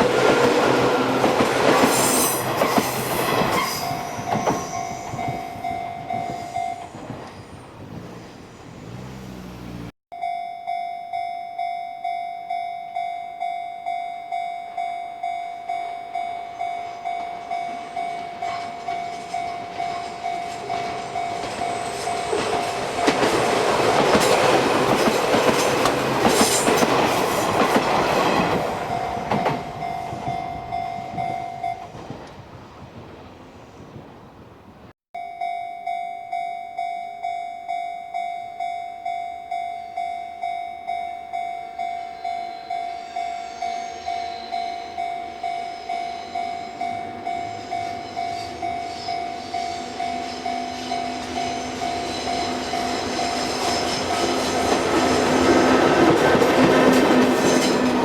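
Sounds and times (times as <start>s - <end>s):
train rumble and wheel clatter: 0.0s - 9.9s, 16.8s - 34.8s, 41.3s - 58.0s
level crossing bell ringing: 3.9s - 7.0s, 10.1s - 23.2s, 28.9s - 31.9s, 35.2s - 53.0s.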